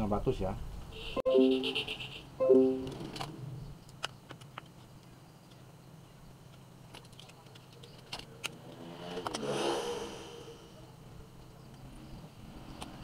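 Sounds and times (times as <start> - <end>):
laptop parts clicking: 3.9 - 5.6, 6.5 - 8.7
motor vehicle passing: 8.6 - 10.9.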